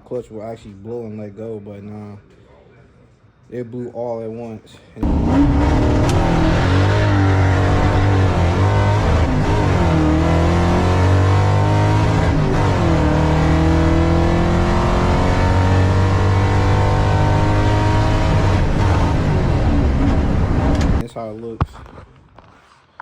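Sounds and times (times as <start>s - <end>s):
car engine accelerating hard: 5.0s - 21.0s.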